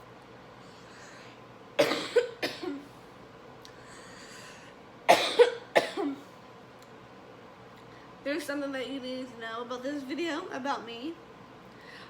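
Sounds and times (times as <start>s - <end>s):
person coughing: 1.8s - 2.9s, 5.1s - 6.2s.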